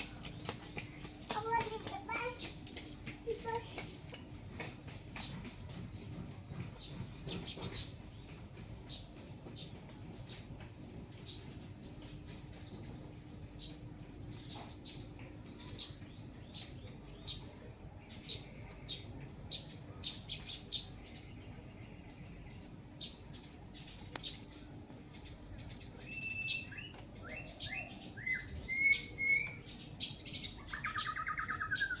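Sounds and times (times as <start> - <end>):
whistled bird notes: 26.0 - 29.7, 30.7 - 32.0.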